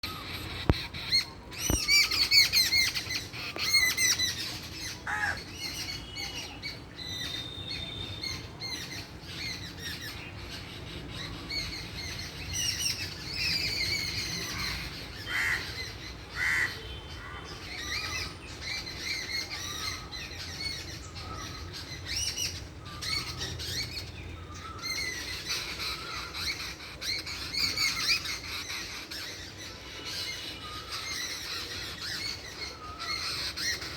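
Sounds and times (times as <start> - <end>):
small birds chirping and squawking: 0.0 - 33.9.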